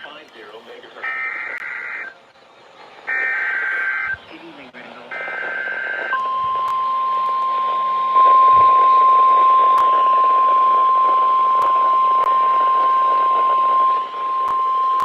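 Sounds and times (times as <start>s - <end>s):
radio static: 0.0s - 2.2s, 3.0s - 6.8s, 7.5s - 15.0s
high-pitched alarm beep: 5.1s - 15.0s.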